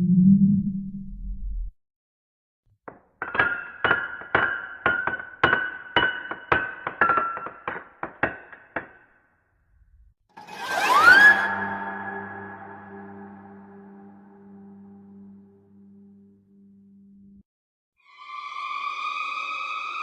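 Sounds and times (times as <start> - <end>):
low rumble: 0.0 - 1.8.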